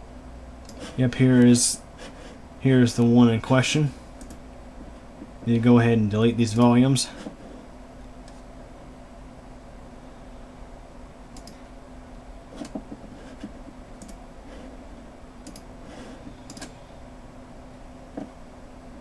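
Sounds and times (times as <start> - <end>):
steady low hum: 0.0 - 19.0
computer mouse clicking: 4.2 - 4.4, 11.4 - 11.6, 12.6 - 14.2, 15.4 - 15.7, 16.4 - 16.8.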